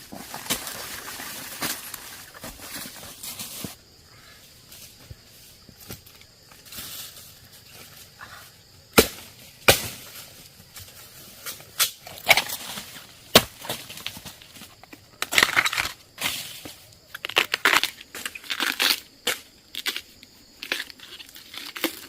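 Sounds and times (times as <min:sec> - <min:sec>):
sharp cracks and snaps: 0:15.2 - 0:16.0, 0:17.1 - 0:22.0.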